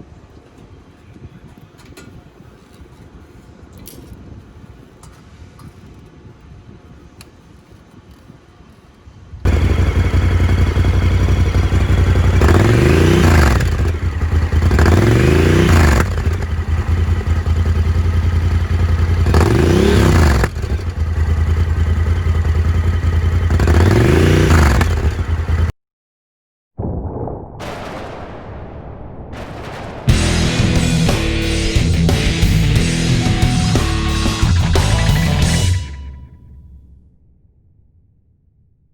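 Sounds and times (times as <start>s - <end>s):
engine idling and revving: 9.5s - 25.7s, 30.1s - 36.0s.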